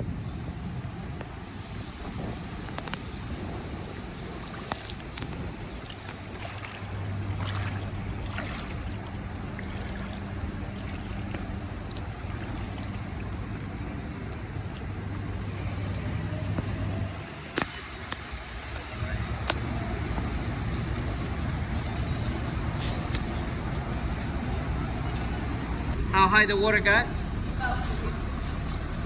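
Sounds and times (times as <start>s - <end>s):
constant hiss: 0.5s - 29.0s
faint clicks: 2.7s - 3.1s.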